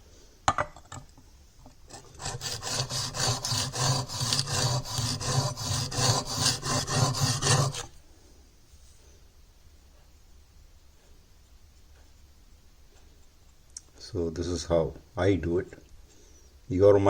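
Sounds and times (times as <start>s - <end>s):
chisel scraping on sharpening stone: 1.9s - 7.9s.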